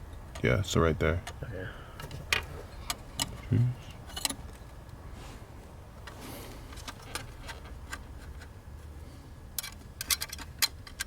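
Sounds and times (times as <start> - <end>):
small metal parts clicking: 9.6 - 11.0.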